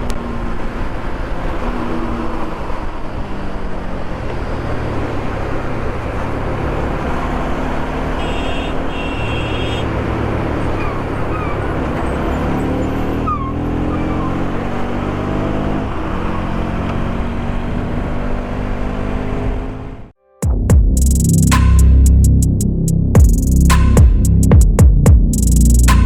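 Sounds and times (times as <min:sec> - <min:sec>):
motorcycle engine running: 0:20.4 - 0:26.0.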